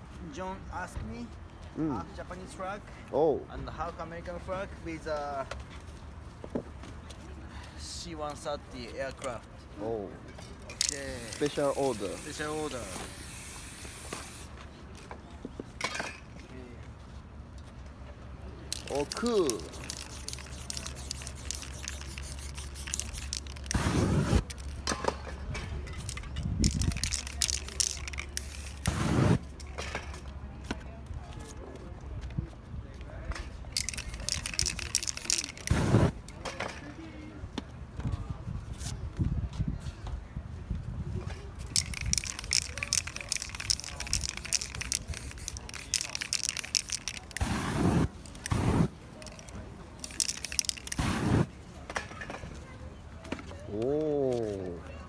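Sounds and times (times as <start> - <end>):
spray can hissing: 10.8 - 14.5, 18.7 - 24.8, 26.0 - 29.5, 33.8 - 36.2, 41.7 - 51.5
stencil clicks and rustles: 18.7 - 25.0, 25.9 - 29.7, 33.8 - 36.2, 41.6 - 51.5.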